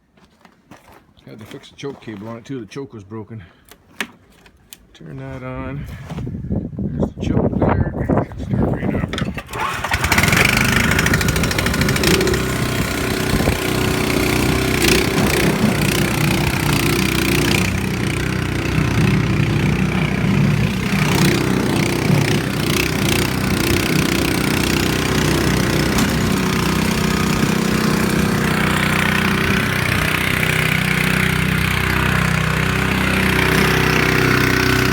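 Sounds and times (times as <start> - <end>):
snow blower engine running: 9.2 - 34.9.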